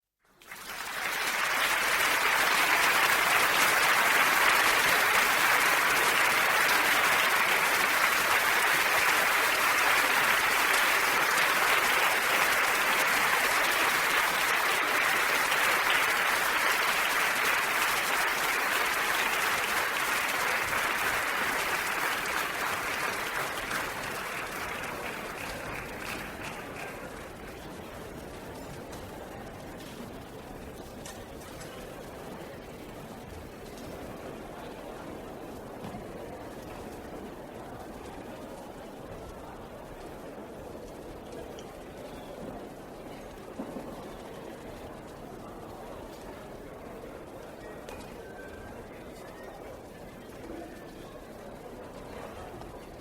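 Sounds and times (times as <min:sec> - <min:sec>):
crowd applauding: 0:00.3 - 0:29.2.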